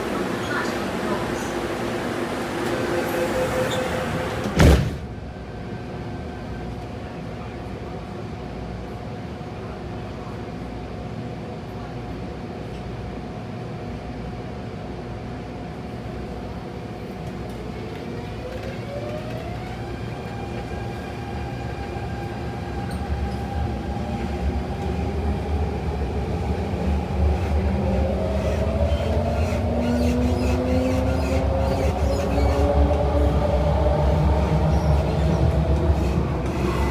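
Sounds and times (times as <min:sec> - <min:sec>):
train motors whining: 0:00.0 - 0:04.9, 0:17.5 - 0:36.9
low rumble of train: 0:00.0 - 0:36.9.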